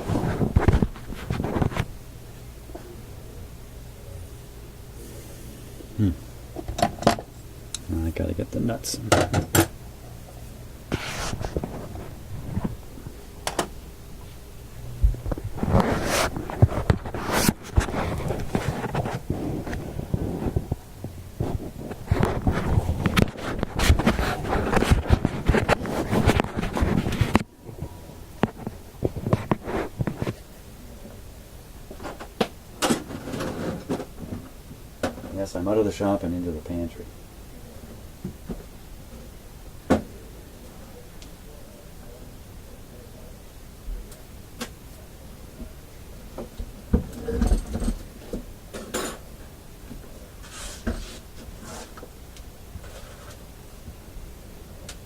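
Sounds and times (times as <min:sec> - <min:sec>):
rustling: 0:10.3 - 0:30.5
low thumps: 0:14.1 - 0:15.8.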